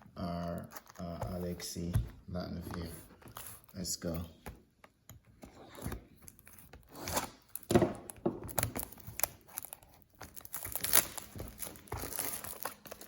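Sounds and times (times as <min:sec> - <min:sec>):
plastic wrapping tearing and crinkling: 0:06.3 - 0:13.0.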